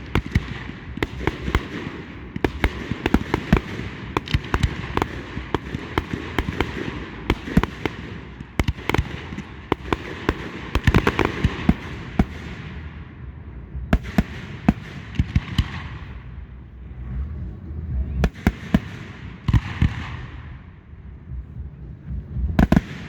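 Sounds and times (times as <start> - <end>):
firework bangs: 0.0 - 13.0
rumble and crackle of shells bursting: 0.0 - 16.6.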